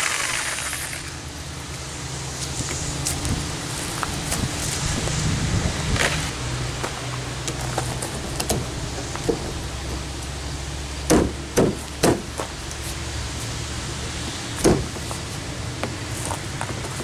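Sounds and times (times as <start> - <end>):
hammer striking chisel: 11.1 - 12.4.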